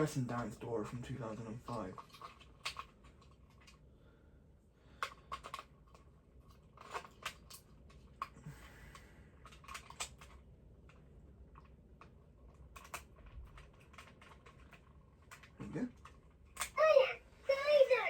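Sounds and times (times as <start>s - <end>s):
plastic toy clicks and taps: 5.0s - 6.1s, 6.8s - 11.0s.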